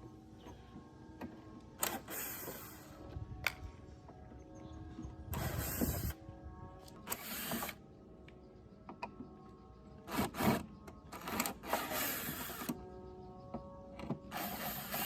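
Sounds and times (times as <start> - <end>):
faint steady tones: 0.0 - 15.0.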